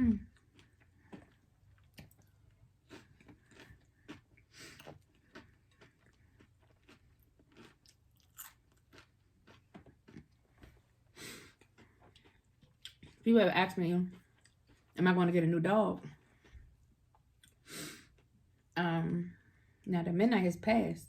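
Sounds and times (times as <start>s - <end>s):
chewing crunches: 0.2s - 13.3s.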